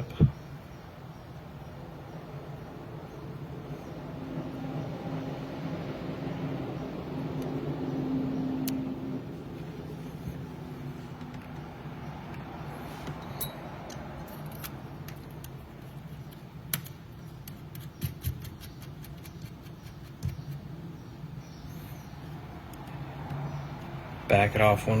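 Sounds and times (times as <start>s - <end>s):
small clicks and taps of parts: 12.3s - 20.6s.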